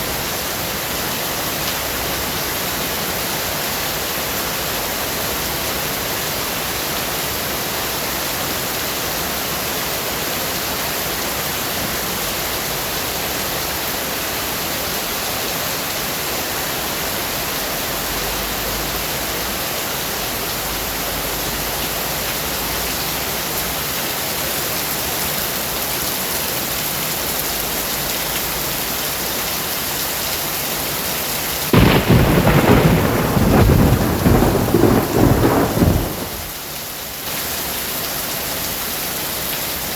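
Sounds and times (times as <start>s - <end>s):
rain hissing: 16.5s - 39.9s
thunderclap rumbling: 31.7s - 36.6s.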